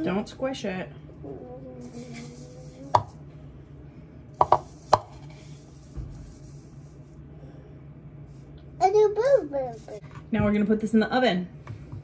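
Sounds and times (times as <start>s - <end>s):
kitchenware knocking against pan: 4.4s - 5.1s.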